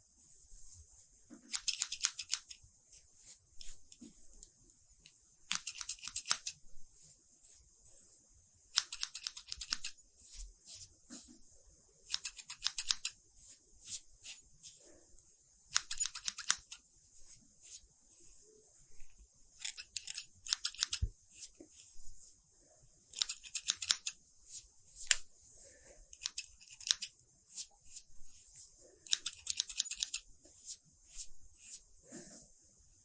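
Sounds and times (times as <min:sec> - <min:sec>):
faint steady hiss: 0:00.0 - 0:33.0
scissors snipping hair: 0:01.4 - 0:02.6, 0:05.5 - 0:06.6, 0:08.7 - 0:10.0, 0:12.1 - 0:13.2, 0:15.7 - 0:16.8, 0:19.6 - 0:21.1, 0:23.1 - 0:24.2, 0:26.1 - 0:27.1, 0:29.0 - 0:30.3.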